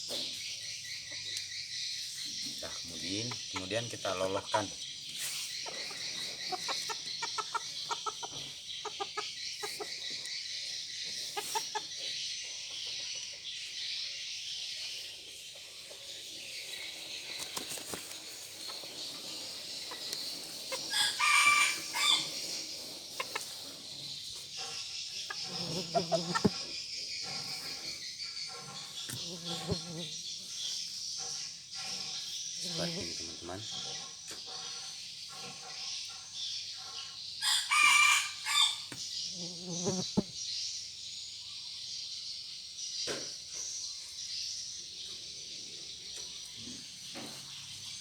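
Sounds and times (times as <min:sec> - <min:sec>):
insects chirring: 0:00.0 - 0:48.0
chicken clucks: 0:02.4 - 0:10.4, 0:11.0 - 0:13.5, 0:15.6 - 0:29.4
rooster crowing: 0:20.7 - 0:22.4, 0:37.4 - 0:38.9.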